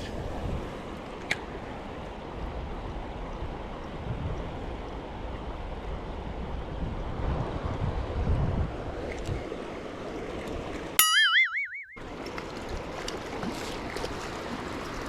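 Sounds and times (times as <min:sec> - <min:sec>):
wind buffeting microphone: 0:06.0 - 0:09.5
stream water rushing: 0:09.4 - 0:15.0.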